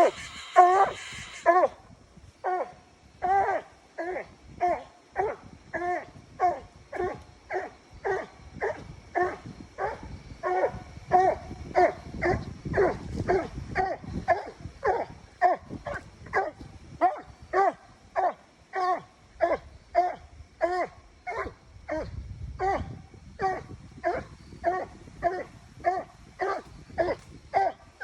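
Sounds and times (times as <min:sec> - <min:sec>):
dog barking rhythmically: 0:25.3 - 0:27.8.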